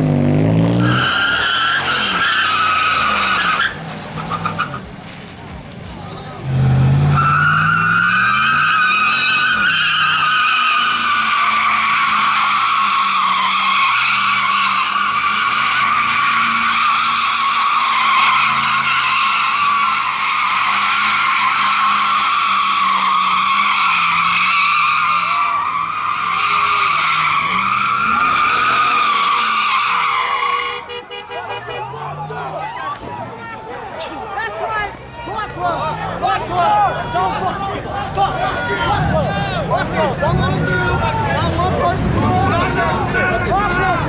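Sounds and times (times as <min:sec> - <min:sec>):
engine at high revs: 0:00.0 - 0:01.0
tires screeching: 0:00.0 - 0:44.0.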